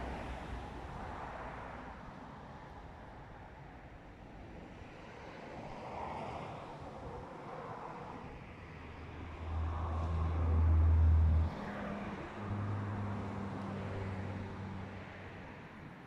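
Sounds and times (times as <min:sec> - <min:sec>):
vehicle engine humming: 0:08.8 - 0:15.1.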